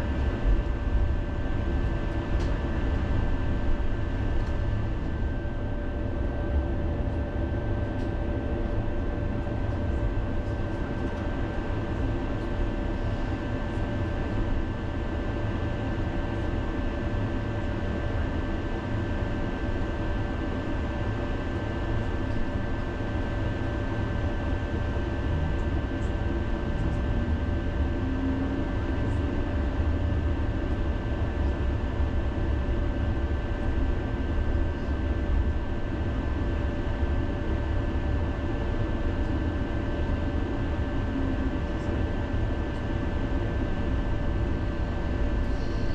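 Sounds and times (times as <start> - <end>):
faint constant whine: 0.0 - 45.9
tram rumbling on rails: 25.2 - 25.8.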